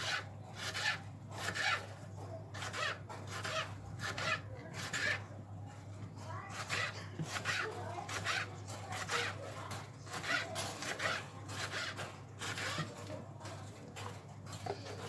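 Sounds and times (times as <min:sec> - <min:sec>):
rasping scraping strokes: 0:00.0 - 0:05.3, 0:06.3 - 0:15.0.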